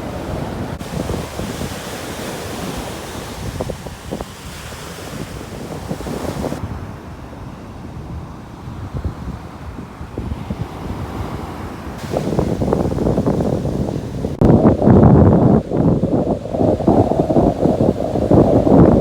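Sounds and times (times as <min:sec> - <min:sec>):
sea surf rushing: 0:00.0 - 0:19.0
wind buffeting microphone: 0:00.0 - 0:19.0.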